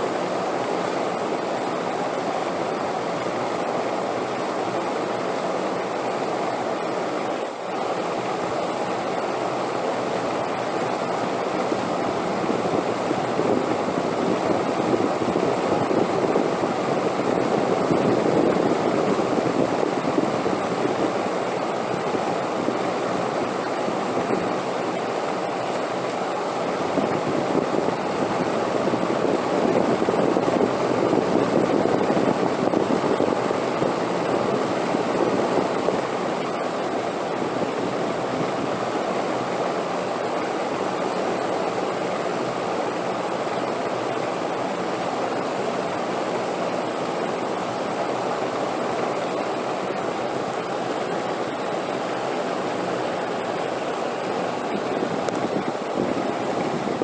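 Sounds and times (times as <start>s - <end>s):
wind blowing: 11.3s - 39.6s, 49.1s - 57.0s.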